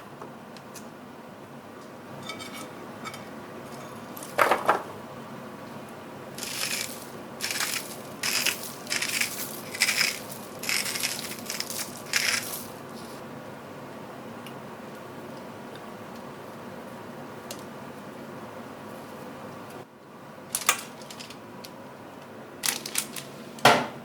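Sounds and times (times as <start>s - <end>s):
crisp crunching strokes: 6.4s - 13.2s.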